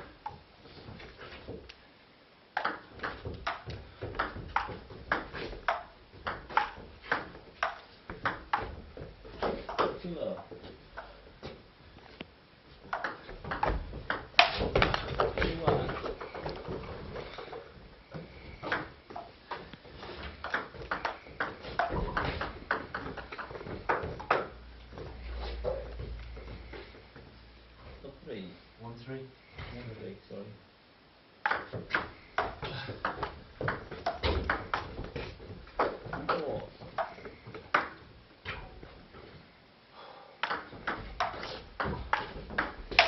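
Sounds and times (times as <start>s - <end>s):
ping pong ball hitting bats and table: 2.6s - 11.1s, 12.8s - 19.7s, 20.4s - 24.6s, 31.4s - 38.7s, 40.4s - 43.0s.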